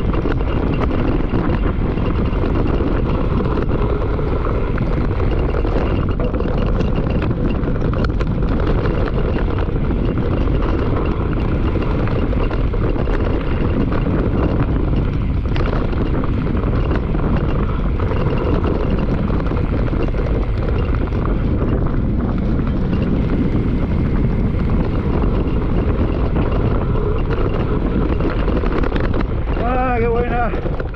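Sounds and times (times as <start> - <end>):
bike clicks and rattles: 0.0 - 30.9
tyres running over dirt: 0.0 - 30.9
wind buffeting microphone: 0.0 - 30.9.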